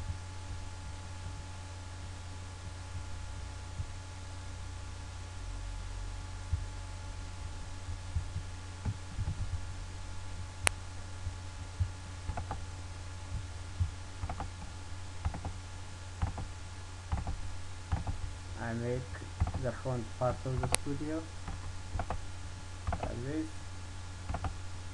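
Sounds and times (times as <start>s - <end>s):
low electrical hum: 0.0s - 24.9s
mouse and keyboard clicks: 14.2s - 14.6s, 19.4s - 19.6s, 20.6s - 20.9s, 22.9s - 23.2s, 24.3s - 24.6s.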